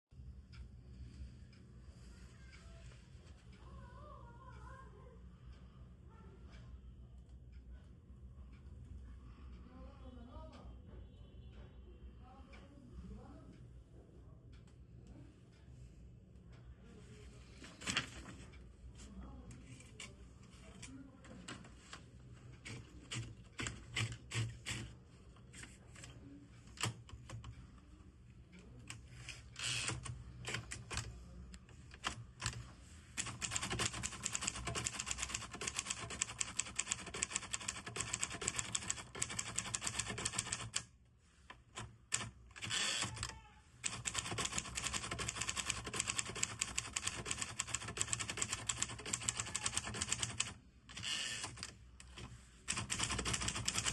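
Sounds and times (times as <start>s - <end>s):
manual typewriter typing: 22.6s - 25.0s, 29.6s - 31.1s, 33.2s - 40.9s, 41.7s - 53.9s.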